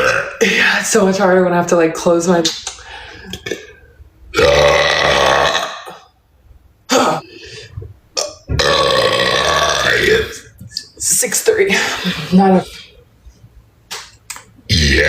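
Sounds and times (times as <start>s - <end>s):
woman burping: 0.0s - 0.6s, 3.3s - 6.1s, 6.9s - 7.2s, 8.2s - 10.4s.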